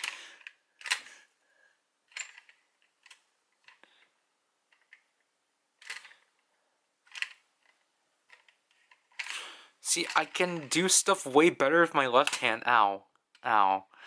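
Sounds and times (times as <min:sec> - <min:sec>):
plastic toy clicks and knocks: 0:07.0 - 0:09.4.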